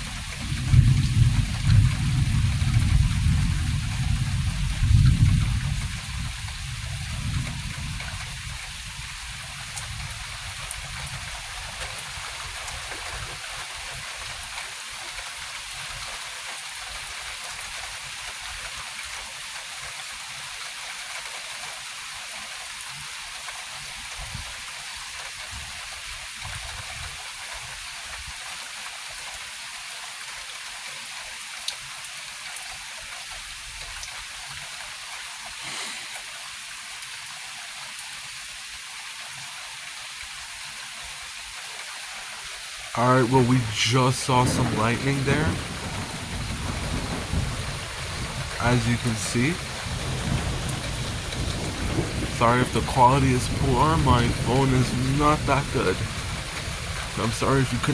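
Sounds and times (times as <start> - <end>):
rain hissing: 0.0 - 15.0, 35.4 - 37.1, 42.2 - 57.9.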